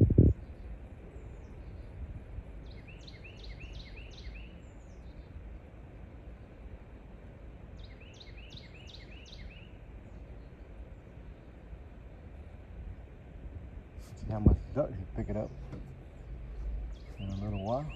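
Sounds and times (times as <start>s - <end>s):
low outdoor rumble: 0.0s - 17.9s
songbird whistling: 2.7s - 4.6s, 7.8s - 9.8s, 16.9s - 17.9s.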